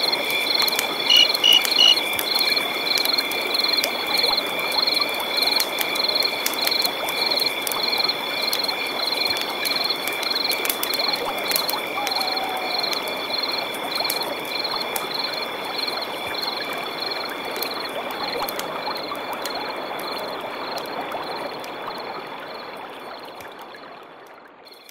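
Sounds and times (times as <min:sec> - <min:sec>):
insects trilling: 0:00.0 - 0:22.6
stream running: 0:00.0 - 0:24.9
high chirp: 0:01.1 - 0:02.0.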